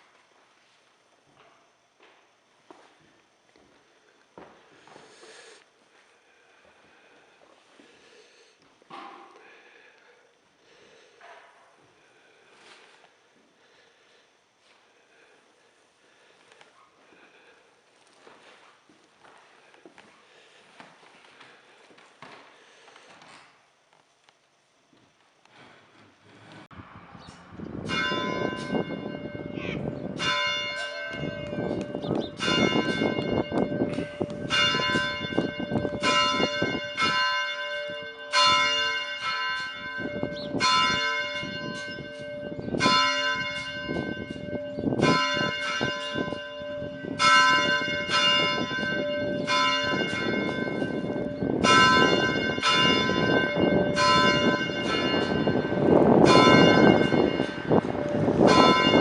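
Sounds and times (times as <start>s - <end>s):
church bell ringing: 27.8s - 59.0s.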